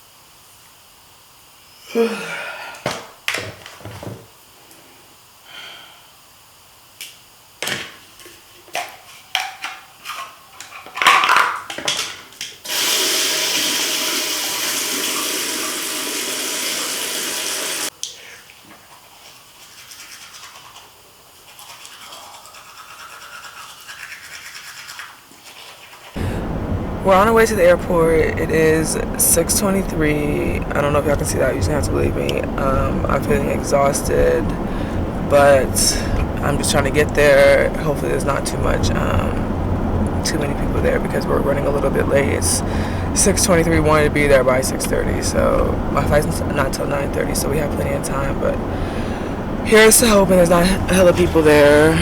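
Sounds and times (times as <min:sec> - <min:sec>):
water running hard: 0:12.7 - 0:17.9, 0:40.1 - 0:52.0.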